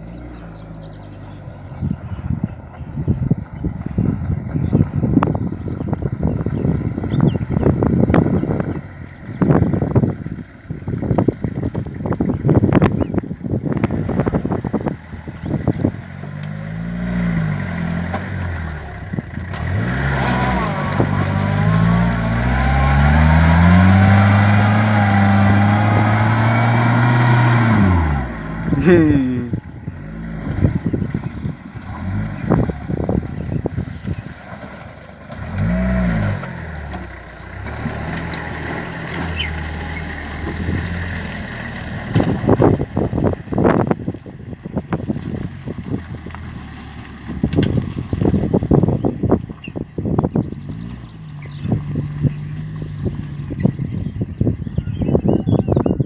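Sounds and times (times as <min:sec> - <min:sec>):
pickup engine revving: 0:00.0 - 0:54.8
truck knocks and clatters: 0:30.1 - 0:53.9.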